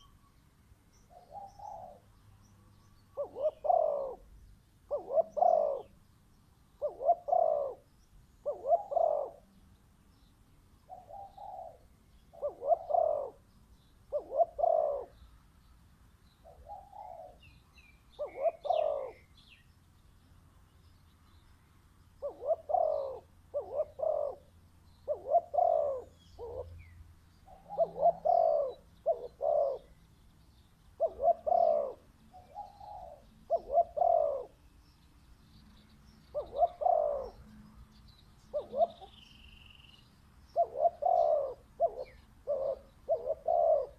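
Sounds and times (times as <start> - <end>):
small birds chirping: 0.0 - 43.9
dove cooing: 1.1 - 2.1, 3.2 - 4.3, 4.9 - 6.0, 6.8 - 9.5, 10.9 - 13.4, 14.1 - 15.2, 16.4 - 17.5, 18.1 - 19.3, 22.2 - 26.9, 27.5 - 30.0, 31.0 - 34.6, 36.3 - 37.5, 38.5 - 39.3, 40.5 - 43.9.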